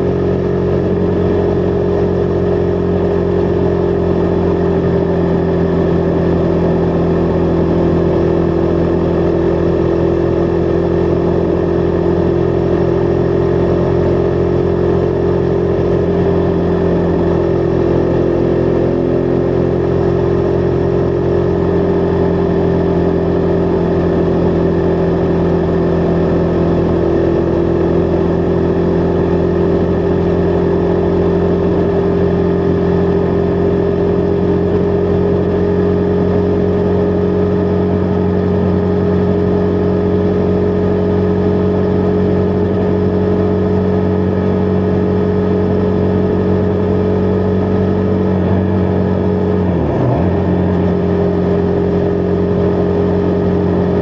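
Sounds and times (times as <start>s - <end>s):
motorcycle engine cruising: 0.0s - 54.0s.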